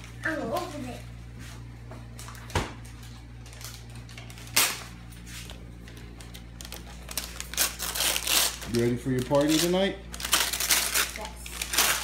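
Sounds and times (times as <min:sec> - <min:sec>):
steady low hum: 0:00.0 - 0:12.0
packaging ripping: 0:03.4 - 0:05.0, 0:06.2 - 0:12.0.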